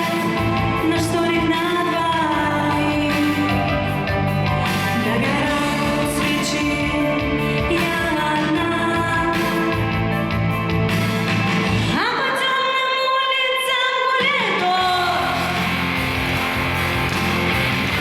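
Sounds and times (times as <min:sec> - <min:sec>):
woman singing pop ballad: 0:00.0 - 0:10.3, 0:11.9 - 0:15.7
instrumental accompaniment: 0:00.0 - 0:12.0, 0:14.9 - 0:18.0.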